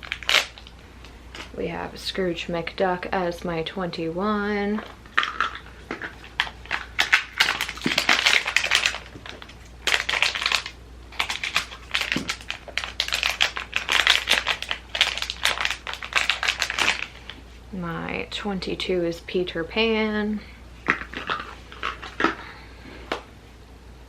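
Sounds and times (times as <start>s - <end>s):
packaging crinkling: 0.0s - 1.6s, 4.8s - 17.4s, 20.8s - 22.5s.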